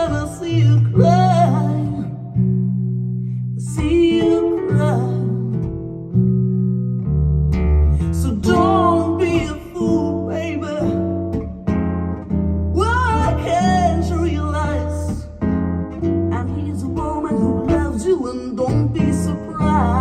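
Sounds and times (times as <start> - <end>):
person singing: 0.0 - 2.4, 3.6 - 5.7, 8.0 - 11.2, 12.8 - 15.4, 16.3 - 20.0
ballad over loudspeakers: 0.0 - 2.5, 8.0 - 11.4, 12.8 - 15.6, 16.2 - 20.0
acoustic guitar chords: 0.0 - 20.0
bass line: 0.0 - 20.0.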